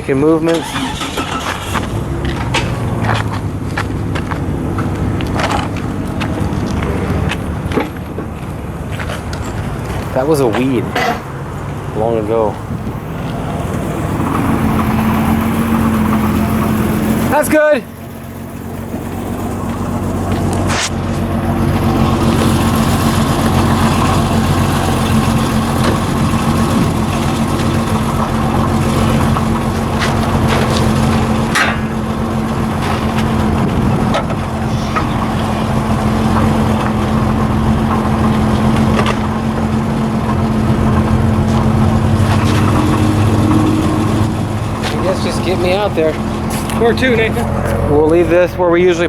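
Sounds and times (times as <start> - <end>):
car engine running steadily: 0.0 - 49.0
short knocks and rattles: 25.3 - 45.0.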